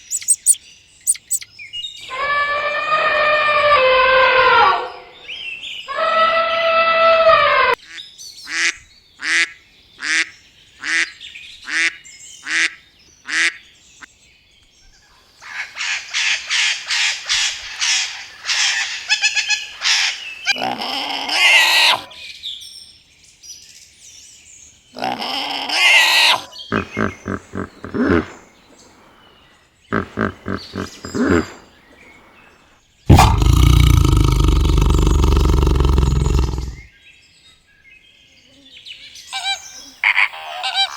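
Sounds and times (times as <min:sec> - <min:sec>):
animal calls: 0:00.0 - 0:01.4, 0:20.4 - 0:22.2, 0:25.0 - 0:29.2, 0:29.9 - 0:32.5, 0:33.1 - 0:36.9, 0:39.3 - 0:40.9
rapid chattering calls: 0:00.0 - 0:01.5, 0:25.8 - 0:29.2, 0:29.9 - 0:32.4, 0:33.1 - 0:36.9, 0:39.3 - 0:40.9.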